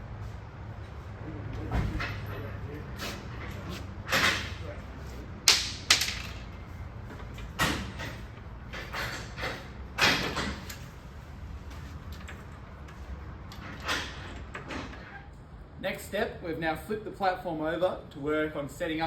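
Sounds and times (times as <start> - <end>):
knocks and clunks of parts: 1.5 - 2.7, 3.4 - 4.7, 5.4 - 10.9.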